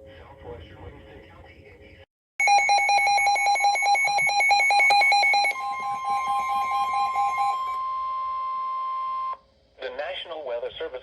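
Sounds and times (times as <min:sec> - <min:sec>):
fast shrill beeping alarm: 0:02.4 - 0:09.4
steady single-pitch alert tone: 0:02.4 - 0:09.4.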